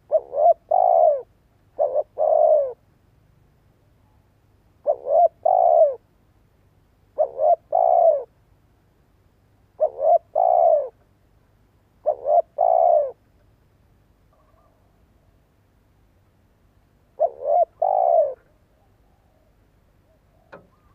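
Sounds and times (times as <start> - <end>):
dove cooing: 0.0 - 2.8, 4.8 - 6.1, 7.1 - 8.4, 9.8 - 11.0, 12.0 - 13.4, 14.3 - 15.4, 17.1 - 20.9.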